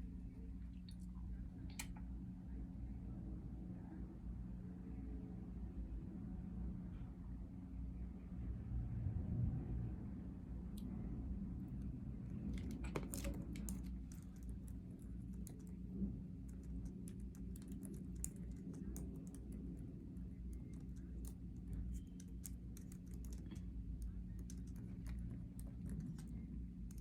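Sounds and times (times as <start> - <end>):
steady low hum: 0.0 - 27.0
small irregular clicks: 12.4 - 27.0.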